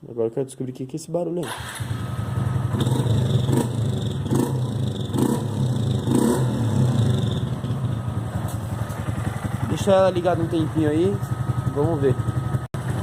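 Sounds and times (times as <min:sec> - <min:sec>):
motorcycle engine idling: 0:01.6 - 0:13.0.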